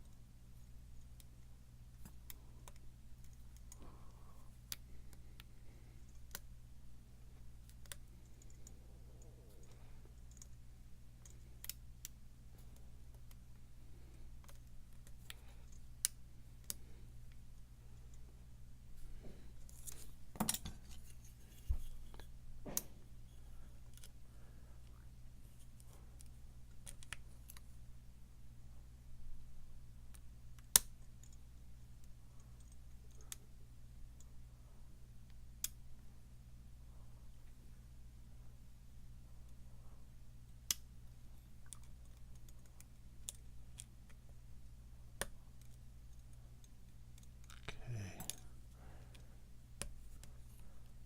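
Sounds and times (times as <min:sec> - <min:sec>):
steady low hum: 0:00.0 - 0:51.0.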